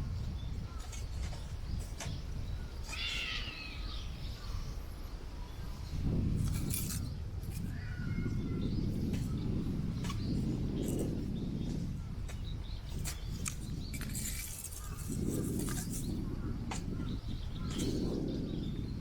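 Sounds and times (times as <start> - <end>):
wind buffeting microphone: 0.0 - 19.0
bird calling: 2.8 - 4.7.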